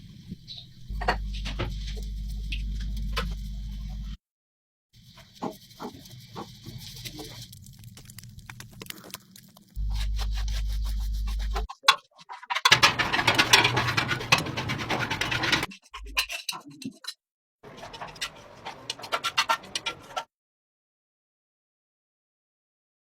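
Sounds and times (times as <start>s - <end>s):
steady low hum: 0.0s - 4.2s, 9.7s - 11.7s
rapid scraping and scratching: 0.5s - 4.2s, 5.0s - 20.3s.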